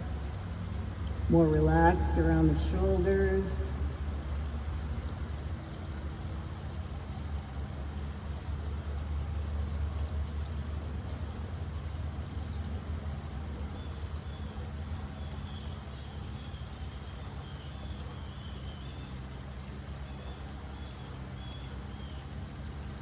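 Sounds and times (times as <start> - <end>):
distant traffic rumble: 0.0 - 23.0
faint bird chirps: 15.2 - 19.2, 20.0 - 22.4.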